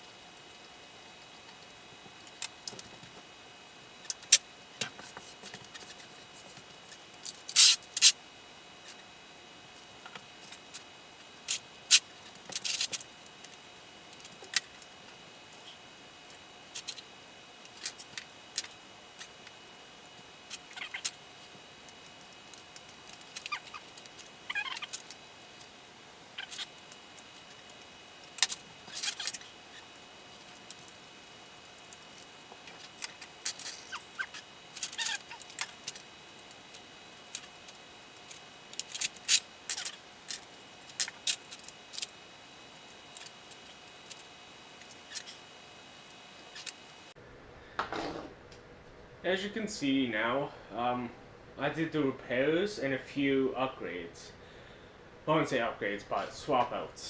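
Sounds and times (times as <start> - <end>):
faint steady whine: 0.0 - 57.0
small parts and tools clicking: 6.9 - 8.2, 11.5 - 14.9, 20.5 - 21.2, 21.8 - 25.8, 26.4 - 31.0, 31.7 - 42.1, 46.4 - 46.9.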